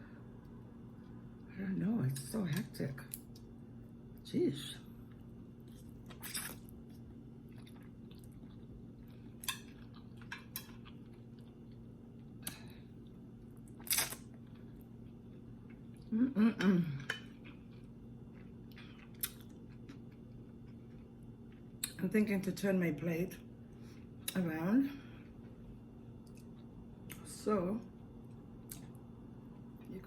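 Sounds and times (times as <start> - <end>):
chewing: 5.1 - 16.1, 17.0 - 22.0
person humming: 16.1 - 17.1.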